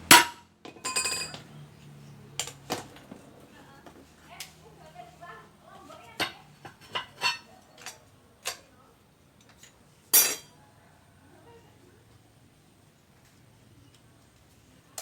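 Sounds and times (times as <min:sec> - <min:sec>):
ringing metal clank: 0:00.2 - 0:01.4
metal tools knocking and clinking: 0:00.2 - 0:01.5, 0:06.2 - 0:08.7, 0:09.4 - 0:10.5.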